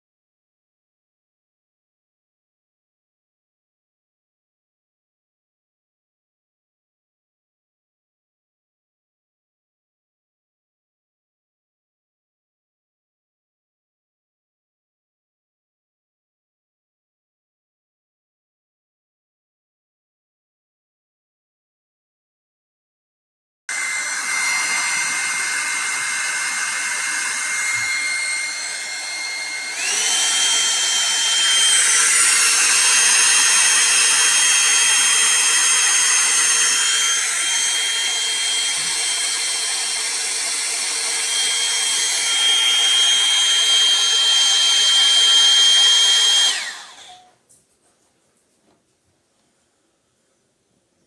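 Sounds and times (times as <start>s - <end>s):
hot-air brush motor whine: 23.7s - 47.3s.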